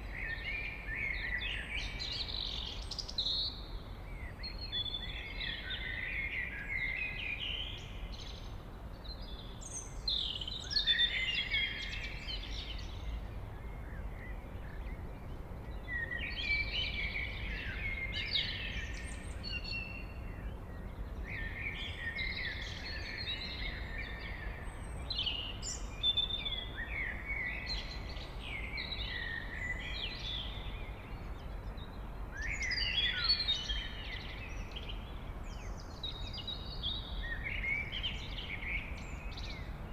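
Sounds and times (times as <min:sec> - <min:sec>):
blackbird singing: 0:21.3 - 0:39.7.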